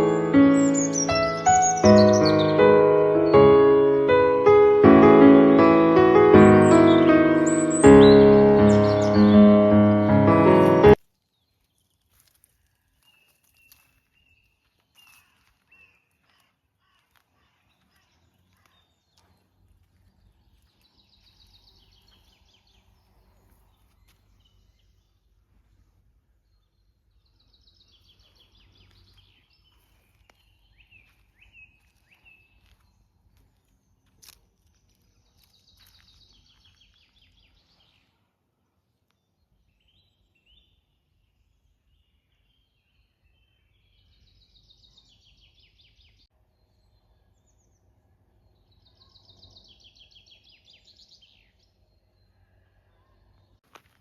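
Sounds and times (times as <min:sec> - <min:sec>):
rapid bird trill: 0:00.0 - 0:03.4, 0:06.4 - 0:09.8
bird chirps: 0:00.0 - 0:11.7.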